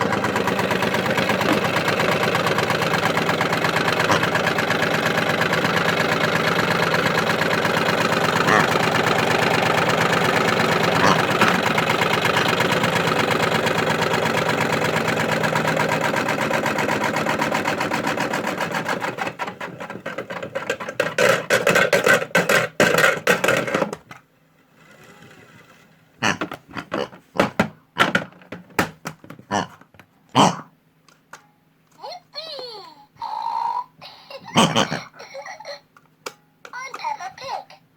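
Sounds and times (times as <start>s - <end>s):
toy washing machine motor rattling: 0.0s - 26.5s, 33.3s - 35.8s, 36.7s - 37.7s.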